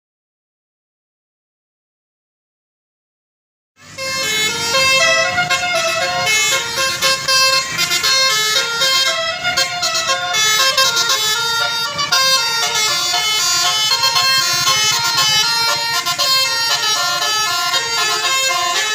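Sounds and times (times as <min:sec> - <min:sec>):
bus air horn melody: 0:03.8 - 0:18.9.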